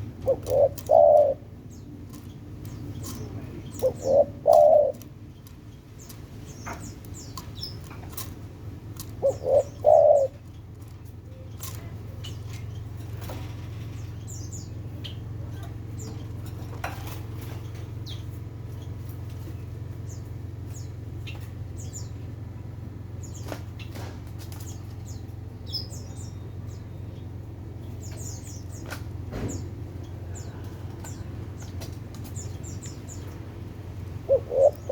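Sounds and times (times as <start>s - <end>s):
sharp taps and rustles: 0.0s - 14.2s, 15.6s - 18.0s, 23.3s - 25.2s, 28.0s - 33.5s
birds chirping: 0.0s - 34.9s
steady low hum: 0.0s - 34.9s.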